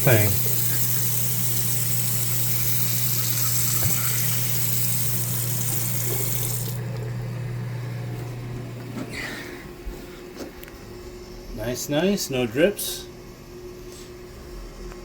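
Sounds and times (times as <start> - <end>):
faucet water running into sink: 0.0 - 7.1
faucet shutting off: 0.0 - 7.3.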